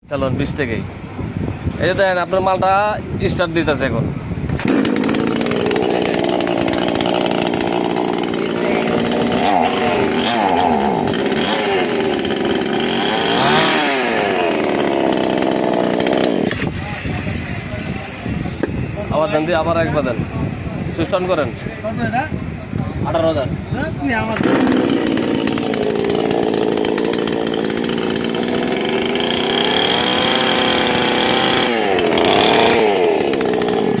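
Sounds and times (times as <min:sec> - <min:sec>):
chainsaw revving: 0:04.5 - 0:21.6, 0:24.3 - 0:34.0.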